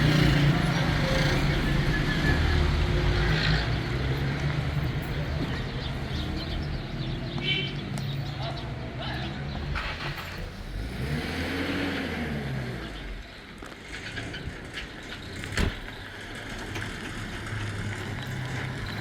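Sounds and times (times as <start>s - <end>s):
vehicle engine running: 0.0s - 7.4s, 12.1s - 19.0s.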